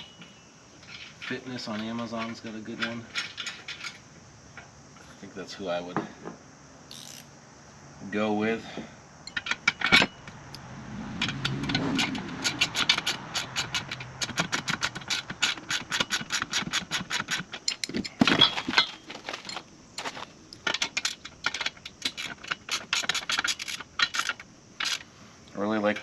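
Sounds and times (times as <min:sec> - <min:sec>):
ratcheting wrench clicking: 0:06.9 - 0:07.3, 0:11.2 - 0:18.0, 0:20.6 - 0:25.0.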